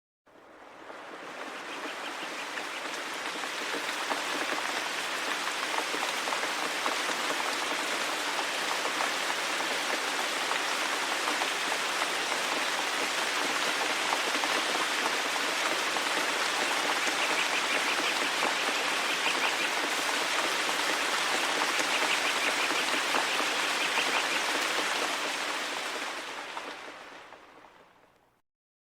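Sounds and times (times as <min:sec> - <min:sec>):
rain falling in forest: 0:00.3 - 0:28.4.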